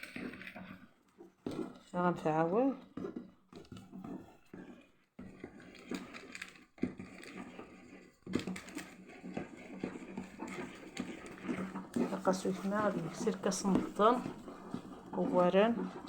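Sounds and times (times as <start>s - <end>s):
electric mixer humming: 5.4s - 16.0s.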